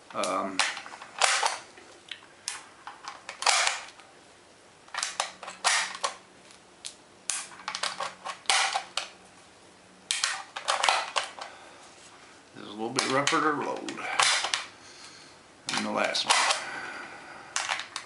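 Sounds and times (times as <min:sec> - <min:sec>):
cartridges clicking into magazine: 0:03.3 - 0:04.0, 0:04.9 - 0:06.2, 0:10.1 - 0:11.5, 0:13.0 - 0:14.7, 0:15.7 - 0:16.7.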